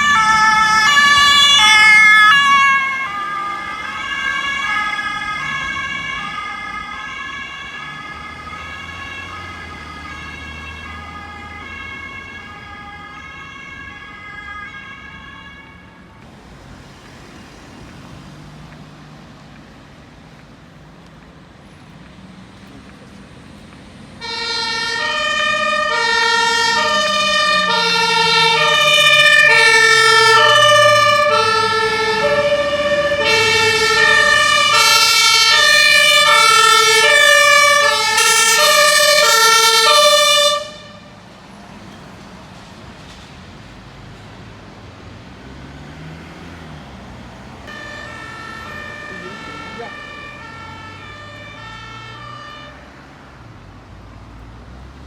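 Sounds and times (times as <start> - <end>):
two-tone emergency siren: 0.0 - 16.2, 24.2 - 41.2, 47.6 - 53.4
engine and traffic noise: 0.0 - 55.0.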